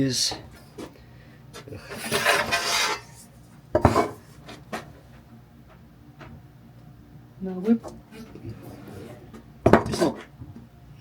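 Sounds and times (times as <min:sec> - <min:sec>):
cutting board scraping on surface: 0:01.9 - 0:03.2, 0:03.8 - 0:04.6, 0:07.7 - 0:10.3.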